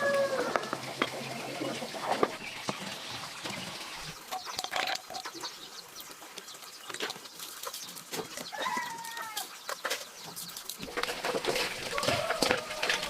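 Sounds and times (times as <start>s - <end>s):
chickens clucking: 0.0s - 13.0s
rustling: 6.1s - 13.0s.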